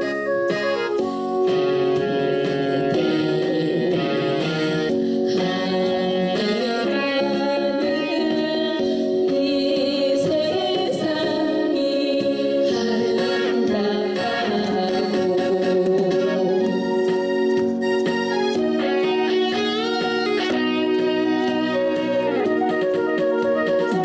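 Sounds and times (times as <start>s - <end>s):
trot song: 0.0s - 24.0s
woman singing: 2.0s - 17.2s.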